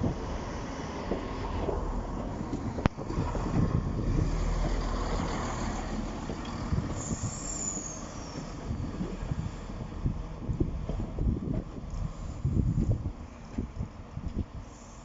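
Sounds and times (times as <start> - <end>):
heavy vehicle engine rumbling: 0.0 - 15.0
high-pitched brake squeal: 6.8 - 8.6.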